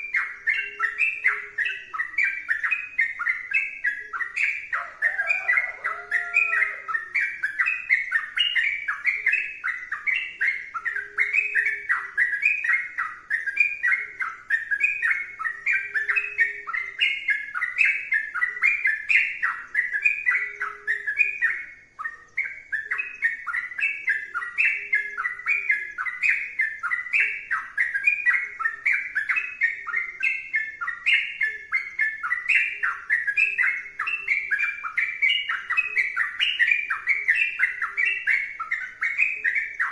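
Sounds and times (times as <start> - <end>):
bird singing rapid chirping phrases: 0.0 - 39.9.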